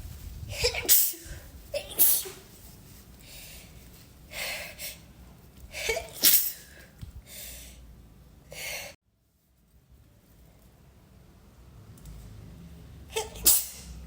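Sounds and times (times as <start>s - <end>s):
woman sneezing: 0.5s - 2.4s, 5.8s - 6.8s, 13.2s - 14.0s.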